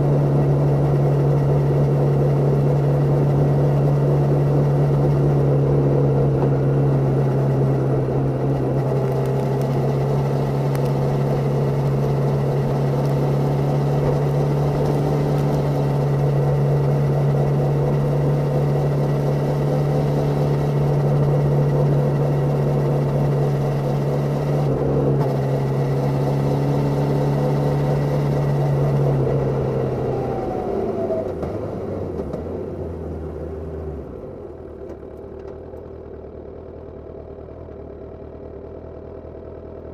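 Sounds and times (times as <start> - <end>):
motorcycle engine revving: 0.0 - 31.6.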